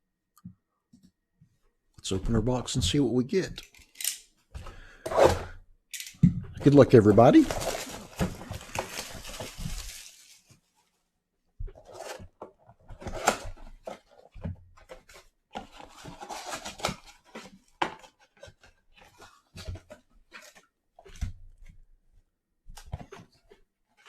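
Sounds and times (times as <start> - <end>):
plastic wrap and cardboard rustling: 6.6 - 11.1, 11.8 - 21.3.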